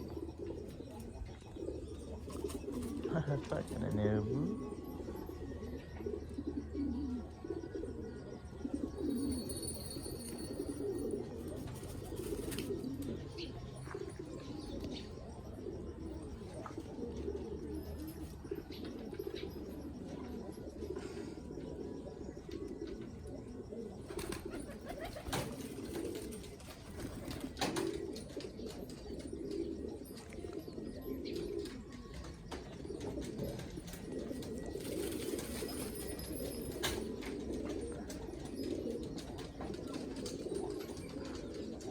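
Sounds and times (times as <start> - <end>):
pigeons cooing: 0.0 - 41.9.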